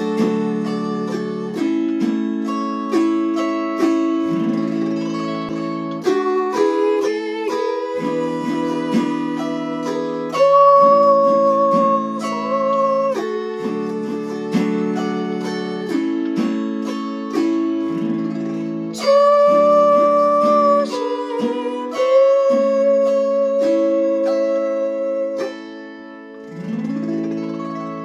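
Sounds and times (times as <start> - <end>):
autoharp strumming a slow hymn: 0.0 - 28.0.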